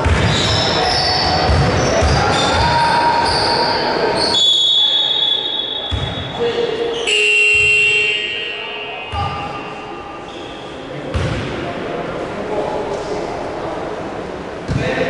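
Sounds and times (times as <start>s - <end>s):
basketball bouncing: 0.0s - 0.6s, 1.2s - 2.4s, 5.9s - 6.2s, 11.1s - 11.6s
crowd voices: 0.0s - 15.0s
shoes squeaking: 8.8s - 10.9s.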